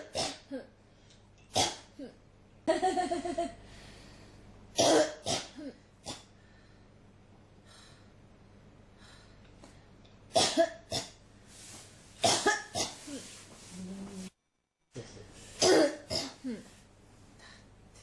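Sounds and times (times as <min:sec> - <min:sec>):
person coughing: 0:00.0 - 0:00.7, 0:04.8 - 0:06.3, 0:10.4 - 0:11.2, 0:12.2 - 0:13.3, 0:15.6 - 0:16.7.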